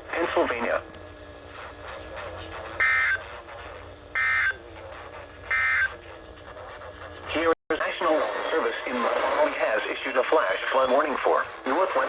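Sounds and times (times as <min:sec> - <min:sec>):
faint radio hiss and hum: 0:00.0 - 0:12.0
digital data tone bursts: 0:07.4 - 0:12.0.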